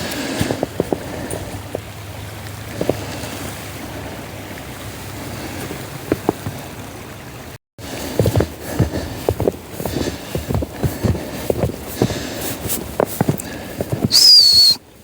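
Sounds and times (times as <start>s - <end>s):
footsteps in snow: 0.0s - 1.8s, 7.8s - 14.8s.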